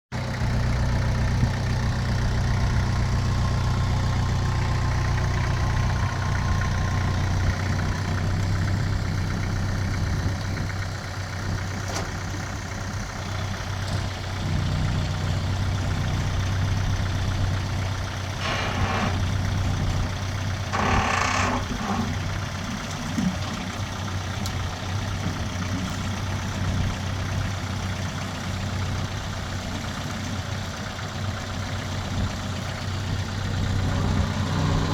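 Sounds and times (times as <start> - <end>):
tractor diesel engine running: 0.1 - 34.9
short noisy bursts: 20.7 - 22.2.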